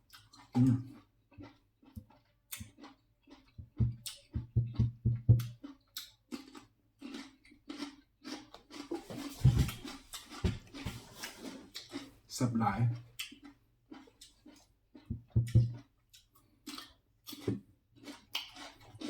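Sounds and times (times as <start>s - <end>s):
dull knocks: 15.2s - 15.8s.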